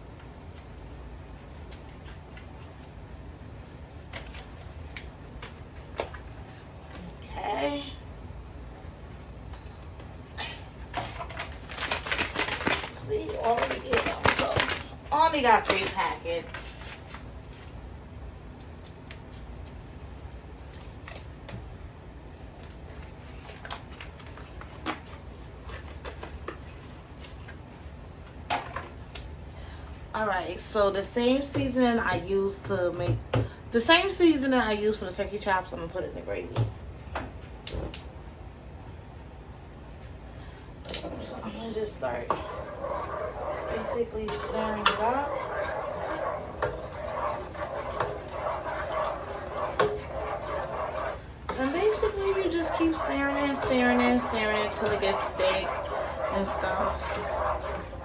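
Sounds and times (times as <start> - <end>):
steady low hum: 38.2 - 58.0.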